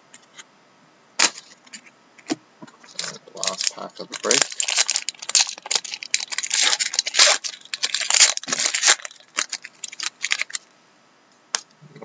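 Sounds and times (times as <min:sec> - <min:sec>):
wrapper tearing and crinkling: 0:01.2 - 0:01.6, 0:02.8 - 0:10.7.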